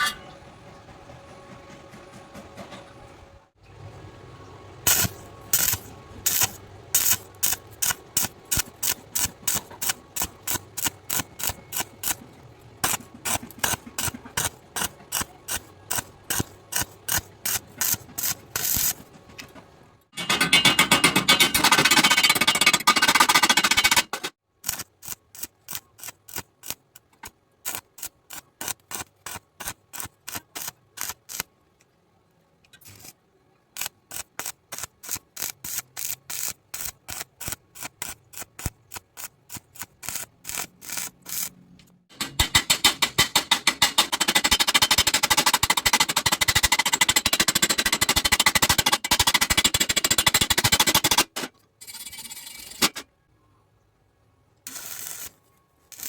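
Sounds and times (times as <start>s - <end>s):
welding arc crackling: 4.8s - 19.1s, 24.6s - 31.5s, 33.8s - 41.6s, 54.7s - 56.0s.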